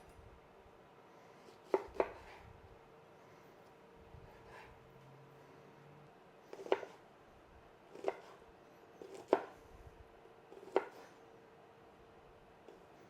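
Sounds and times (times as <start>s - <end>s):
faint steady hum: 0.0s - 13.0s
knife chopping on cutting board: 1.6s - 2.4s, 6.5s - 7.0s, 7.9s - 8.4s, 9.0s - 9.6s, 10.6s - 11.1s.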